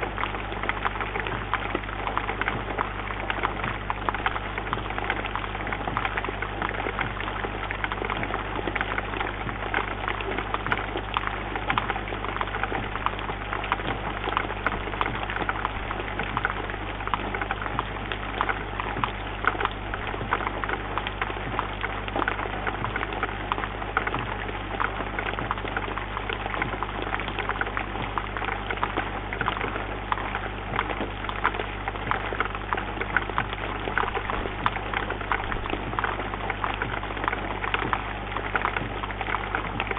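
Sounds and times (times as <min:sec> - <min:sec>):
low electrical hum: 0:00.0 - 0:39.9
rain ticking on bird feeder: 0:00.0 - 0:39.9.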